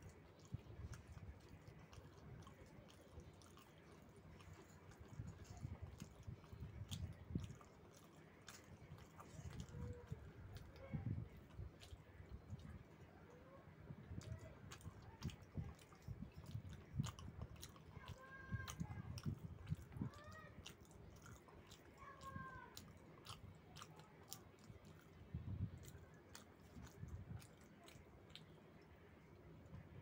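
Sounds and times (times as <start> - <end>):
person chewing food: 0.0 - 30.0.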